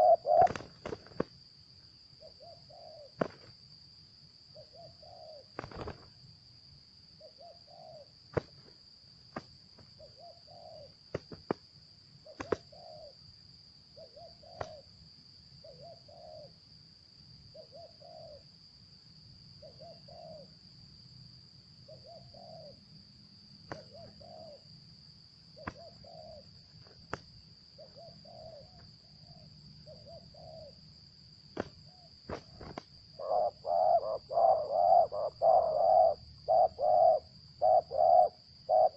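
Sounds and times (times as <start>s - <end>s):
dove cooing: 0.0s - 1.3s, 2.2s - 3.4s, 4.6s - 6.0s, 7.2s - 8.6s, 10.0s - 11.6s, 12.2s - 13.2s, 14.0s - 14.8s, 15.6s - 16.5s, 17.5s - 18.4s, 19.6s - 20.5s, 21.9s - 22.8s, 23.7s - 24.6s, 25.6s - 26.5s, 27.8s - 30.8s, 31.6s - 38.9s.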